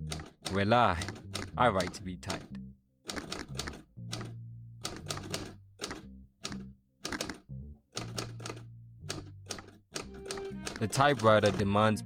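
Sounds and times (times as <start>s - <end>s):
typewriter keys clacking: 3.1s - 4.3s, 4.9s - 7.4s, 8.0s - 11.7s.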